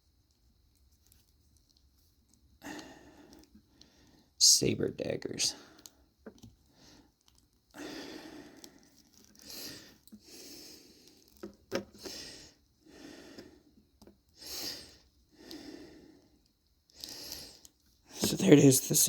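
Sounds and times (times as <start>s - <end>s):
faint breathing: 2.6s - 4.4s, 5.5s - 13.8s, 14.4s - 18.3s.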